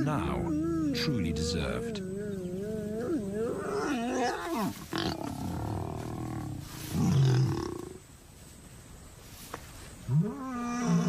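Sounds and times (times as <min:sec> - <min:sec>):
lions growling and snarling: 0:00.0 - 0:08.0.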